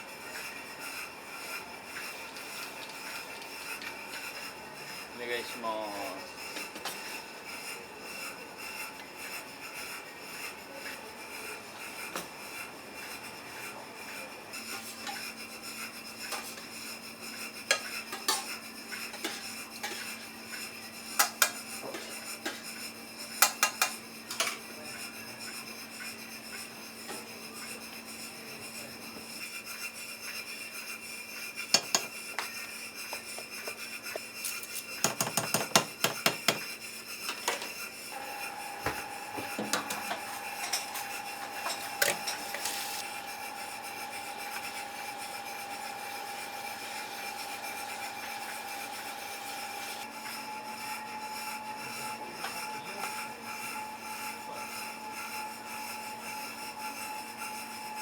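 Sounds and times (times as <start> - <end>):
kitchen equipment hum: 0.0 - 58.0
bowls and utensils clinking: 31.7 - 32.5, 39.5 - 43.0
dishes clattering: 31.8 - 32.5, 39.4 - 42.8.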